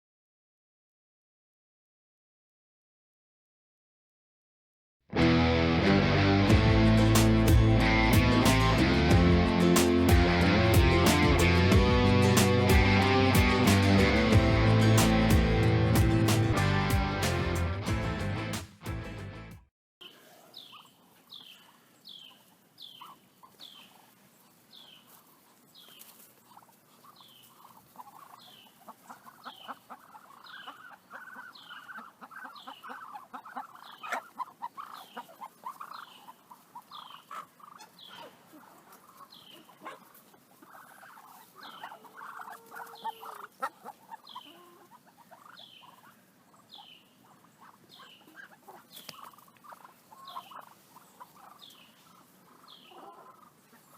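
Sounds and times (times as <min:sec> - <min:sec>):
poultry clucking: 0:20.0 - 0:53.9.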